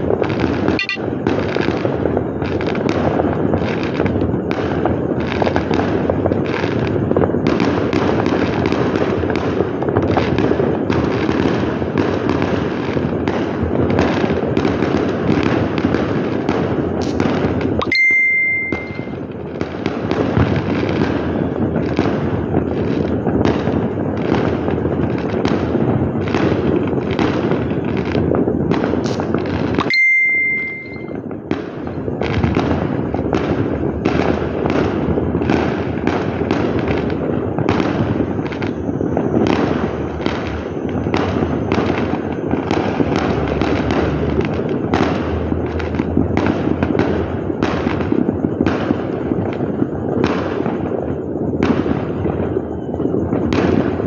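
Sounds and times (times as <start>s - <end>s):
fireworks and firecrackers banging: 0.0s - 54.0s
short high beep: 0.8s - 1.0s, 17.8s - 19.2s, 29.8s - 31.2s.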